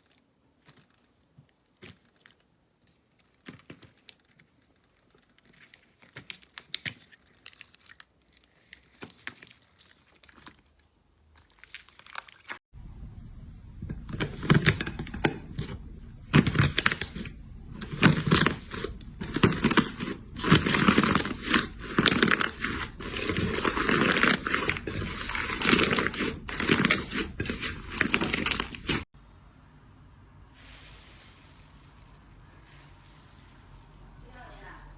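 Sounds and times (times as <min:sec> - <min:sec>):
slime crackling and crunching: 0:00.0 - 0:12.6, 0:16.3 - 0:29.1.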